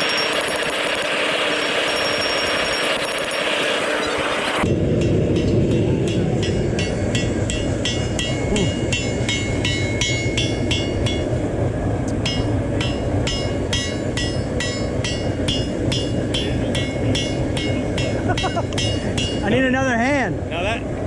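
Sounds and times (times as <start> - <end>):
hammer striking steel on anvil: 0.0 - 11.4, 12.2 - 19.5
low rumble: 4.6 - 19.7.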